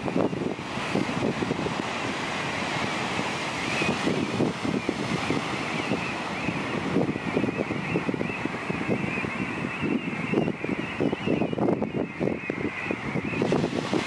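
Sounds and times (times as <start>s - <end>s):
ocean surf hiss: 0.0s - 7.0s, 13.4s - 14.0s
wind buffeting microphone: 0.0s - 14.0s.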